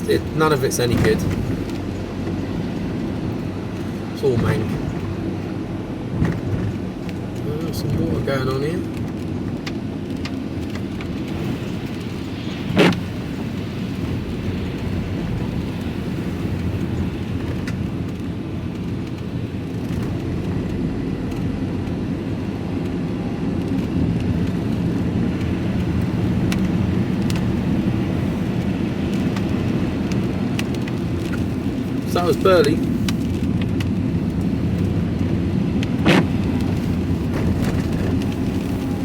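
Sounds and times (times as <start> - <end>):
engine and tyre noise in cab: 0.0 - 39.0.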